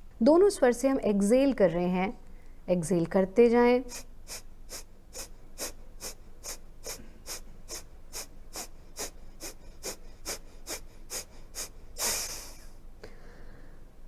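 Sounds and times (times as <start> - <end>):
forceful nasal exhalations: 3.9 - 13.7.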